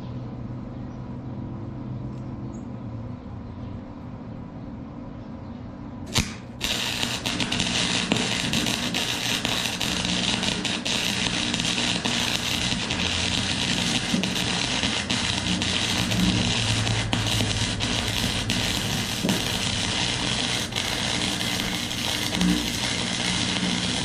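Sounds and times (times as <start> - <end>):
welder low hum: 6.1 - 24.0
welding arc crackling and sputtering: 6.1 - 24.0.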